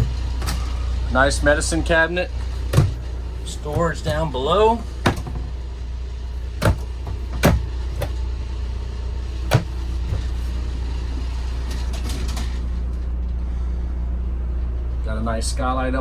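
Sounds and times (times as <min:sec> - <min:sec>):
steady low hum: 0:00.0 - 0:16.0
cabinet doors knocking and clicking: 0:02.6 - 0:03.0, 0:05.0 - 0:05.4, 0:06.6 - 0:08.2, 0:09.5 - 0:10.3.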